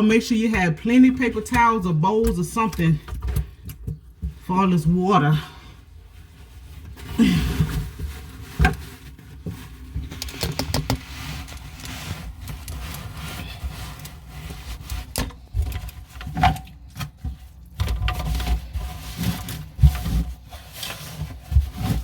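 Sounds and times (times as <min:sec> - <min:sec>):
faucet parts clicking and rubbing: 0:10.1 - 0:11.2.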